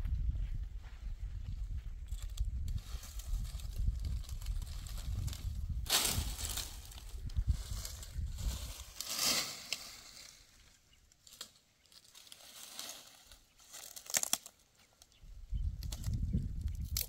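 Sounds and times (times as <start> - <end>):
dry wheat stalks crunching: 2.1 - 14.6.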